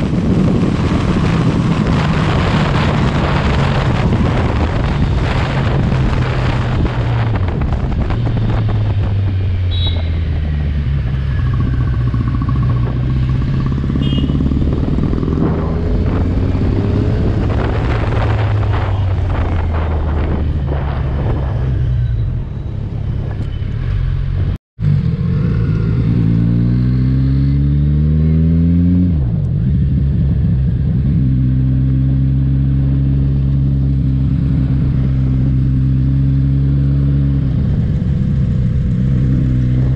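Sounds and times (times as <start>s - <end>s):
motorcycle engine running: 0.0s - 21.4s
rushing wind noise: 0.0s - 39.9s.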